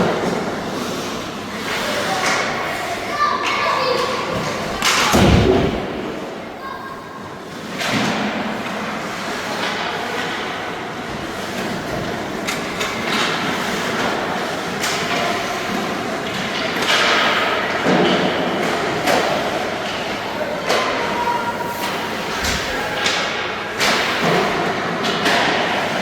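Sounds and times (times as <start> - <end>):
din of skates and players: 0.0 - 26.0
pucks and sticks hitting boards: 11.6 - 19.6, 20.6 - 21.0, 21.8 - 26.0.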